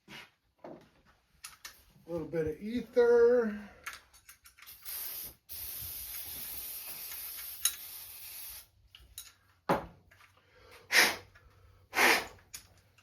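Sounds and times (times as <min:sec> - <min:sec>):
aerosol can hissing: 0:04.7 - 0:08.7, 0:12.0 - 0:12.4.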